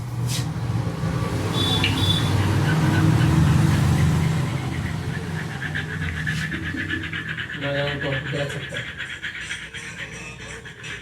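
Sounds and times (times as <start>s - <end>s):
vehicle engine running: 0.0s - 8.7s.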